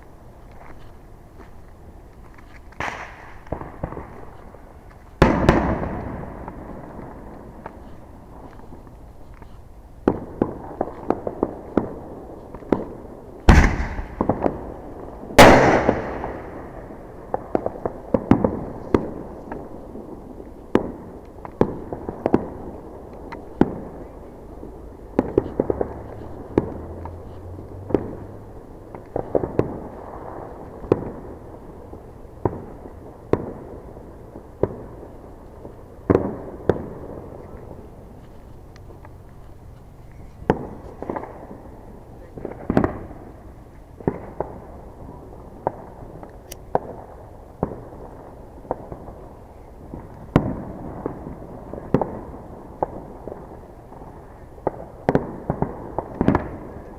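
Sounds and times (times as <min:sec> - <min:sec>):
fireworks popping and crackling: 0:00.0 - 0:56.9
loud firework bangs: 0:02.8 - 0:07.8, 0:10.0 - 0:19.7, 0:27.9 - 0:28.3, 0:29.1 - 0:31.7, 0:36.0 - 0:37.9, 0:40.4 - 0:43.4, 0:44.0 - 0:56.9.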